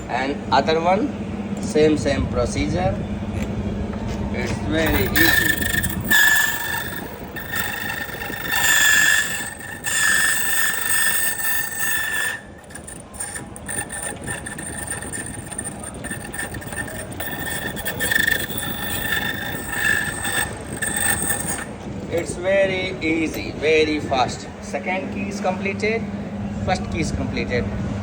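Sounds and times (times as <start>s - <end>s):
key-cutting machine grinding whine: 4.4s - 22.4s.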